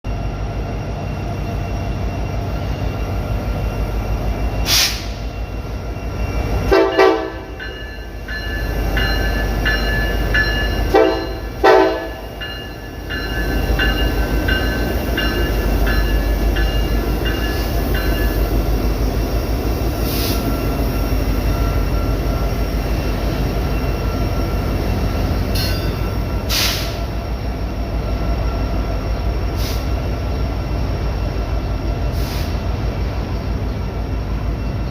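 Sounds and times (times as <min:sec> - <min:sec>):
locomotive bell ringing: 0:00.1 - 0:26.6, 0:27.2 - 0:29.5
locomotive air horn: 0:06.7 - 0:07.5, 0:10.9 - 0:12.2.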